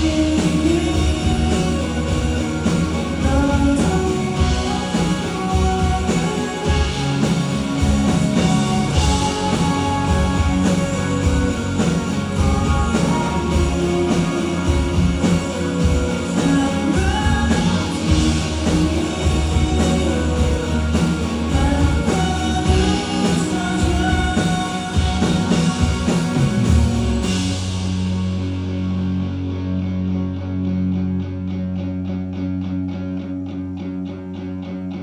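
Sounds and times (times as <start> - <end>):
person singing: 0.0 - 26.9
live rock band: 0.0 - 29.8.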